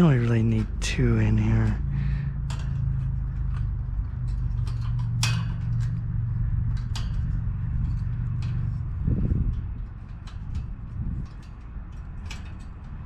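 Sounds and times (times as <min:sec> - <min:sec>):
low rumble: 0:00.0 - 0:13.0
metallic clicks on bicycle basket: 0:00.0 - 0:13.0.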